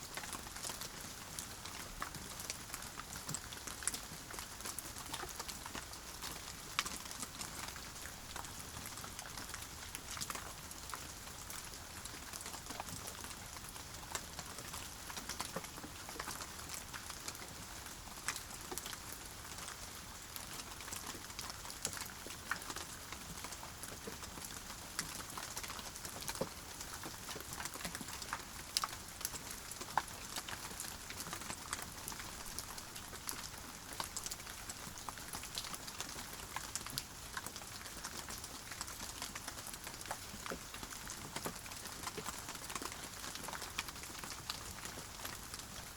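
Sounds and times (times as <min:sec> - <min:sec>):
raindrops pattering: 0:00.0 - 0:45.9
steady rain hiss: 0:00.0 - 0:45.9.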